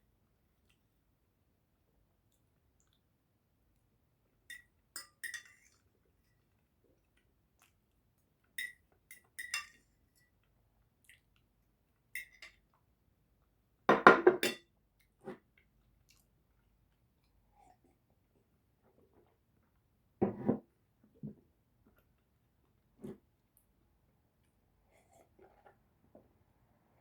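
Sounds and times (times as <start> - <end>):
cutlery clinking on dishes: 4.5 - 5.9, 8.6 - 10.4, 12.2 - 12.6, 13.9 - 14.7
tableware clattering: 13.9 - 14.6.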